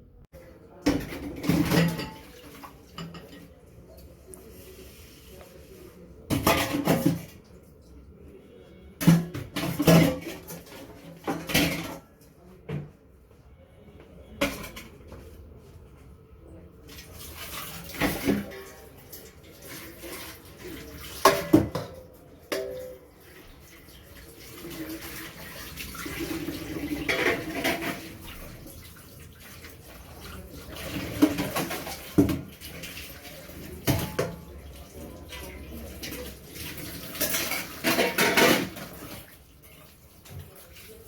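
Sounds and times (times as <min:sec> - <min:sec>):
dishes clattering: 0:00.8 - 0:03.6, 0:06.3 - 0:07.4, 0:09.0 - 0:12.1, 0:21.1 - 0:23.2, 0:26.0 - 0:28.5, 0:30.2 - 0:32.8, 0:33.7 - 0:34.6, 0:36.7 - 0:39.3
running tap water: 0:23.2 - 0:41.0.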